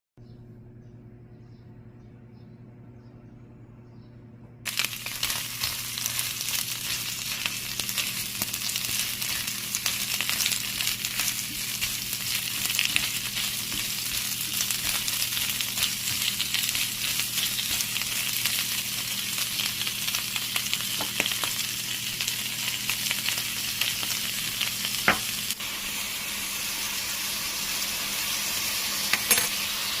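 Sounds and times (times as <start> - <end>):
low hum: 0.2 - 22.3
food sizzling in oil: 4.7 - 30.0.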